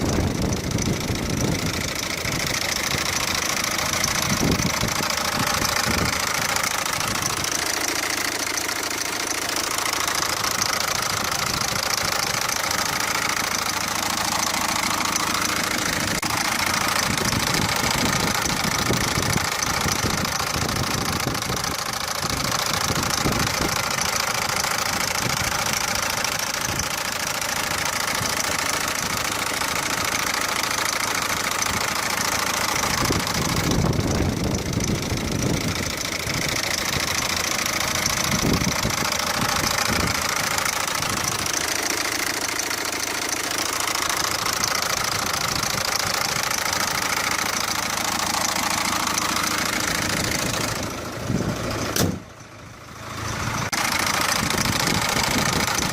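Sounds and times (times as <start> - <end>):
diesel engine running: 0.0 - 55.9
sharp engine knocks: 48.3 - 52.6.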